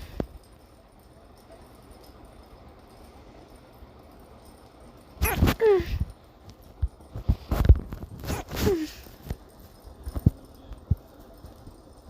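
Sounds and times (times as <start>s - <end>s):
person hiccuping: 5.2s - 6.0s.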